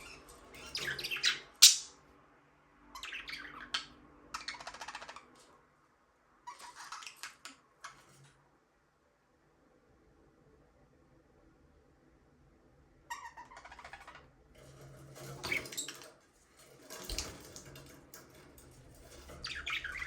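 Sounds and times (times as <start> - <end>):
budgerigar chirping and chattering: 0.7 - 1.9.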